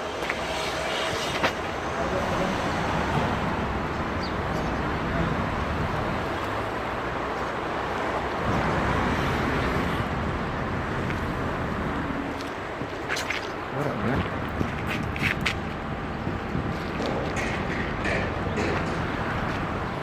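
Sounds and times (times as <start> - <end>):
busy street traffic: 0.0 - 20.0
indistinct voices: 17.0 - 20.0.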